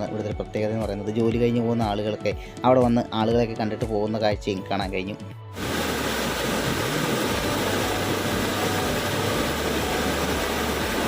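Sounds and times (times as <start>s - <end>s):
water rushing down waterfall: 5.6s - 11.0s.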